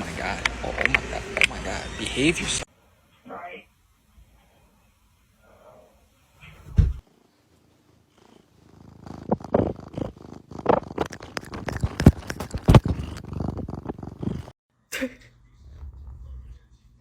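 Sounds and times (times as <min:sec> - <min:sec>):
cat purring loudly: 0:07.1 - 0:14.6.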